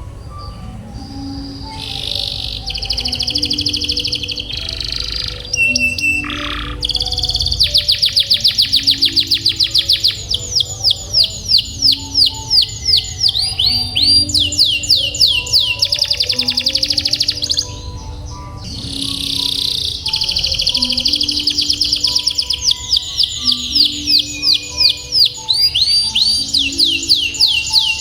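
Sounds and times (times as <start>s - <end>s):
canary singing trills: 0.0s - 28.0s.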